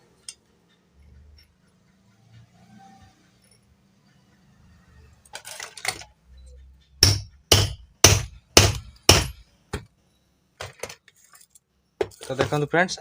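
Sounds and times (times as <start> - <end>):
knocks and clinks of handling: 5.2 - 6.2, 10.6 - 12.7
hammer tapping on wood: 7.0 - 9.8.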